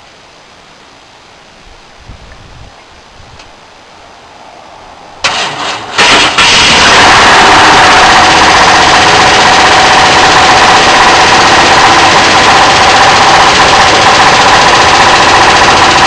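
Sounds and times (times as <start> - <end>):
starter cranking engine: 5.2 - 16.0
truck engine running loud: 5.2 - 16.0.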